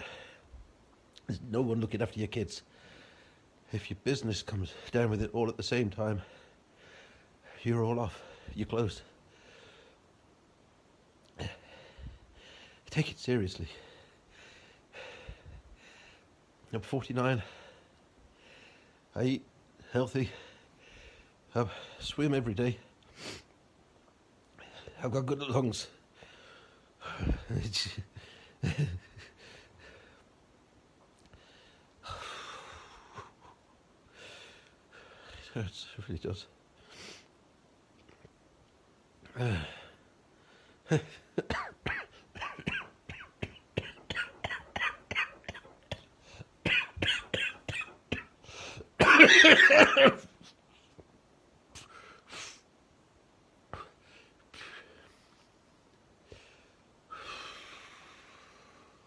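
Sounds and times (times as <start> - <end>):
man breathing laboriously: 0.0 - 0.6, 2.6 - 3.6, 6.2 - 10.2, 11.4 - 12.9, 13.7 - 16.6, 17.4 - 19.1, 19.8 - 22.1, 26.0 - 30.5, 31.2 - 35.6, 47.9 - 49.0, 53.7 - 55.6, 56.2 - 59.0
man coughing: 40.9 - 48.4, 49.0 - 50.4.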